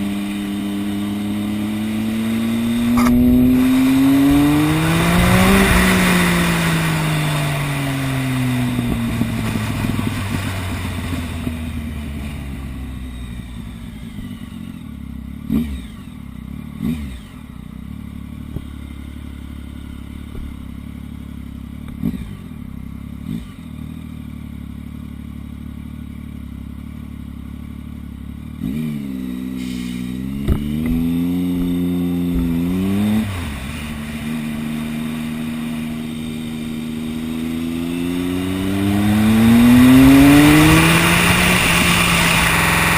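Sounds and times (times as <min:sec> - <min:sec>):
motorcycle engine revving and idling: 0:00.0 - 0:42.9
exhaust popping: 0:02.8 - 0:06.9.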